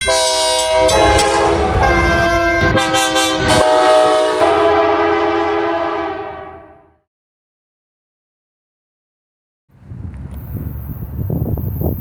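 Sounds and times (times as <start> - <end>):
locomotive air horn chord: 0.0 - 7.0.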